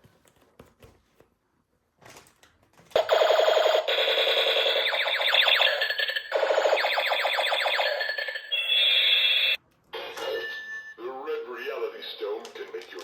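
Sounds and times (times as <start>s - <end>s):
toy gun rapid-fire sound effect: 3.0s - 9.6s.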